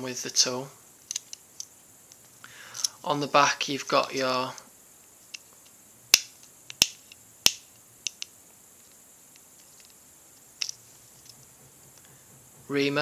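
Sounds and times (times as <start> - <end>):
loud knife snaps: 6.1 - 8.3
pocket knife metallic clicks: 6.1 - 8.3.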